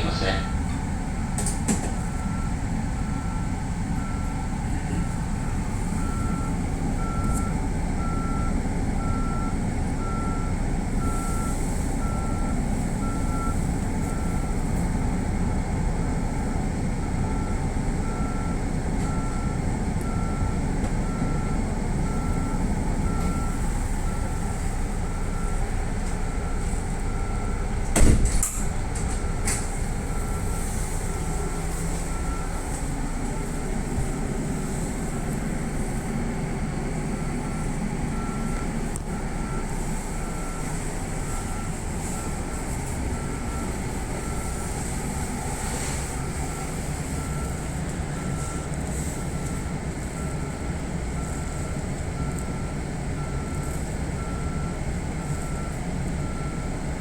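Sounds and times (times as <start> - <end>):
train equipment low hum: 0.0 - 57.0.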